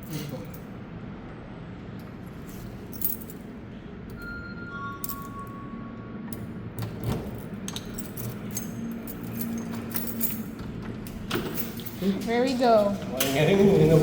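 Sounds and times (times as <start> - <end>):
keys clicking in a door lock: 6.8 - 13.4.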